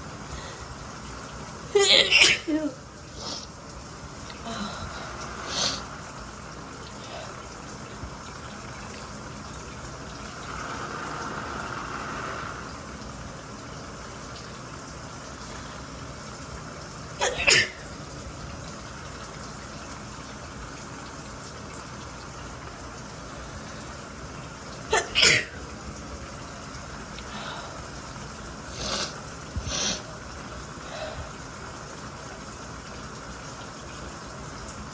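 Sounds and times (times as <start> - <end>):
running shower water: 0.0 - 34.9
woman sneezing: 1.8 - 2.8, 17.2 - 17.8, 24.9 - 25.6.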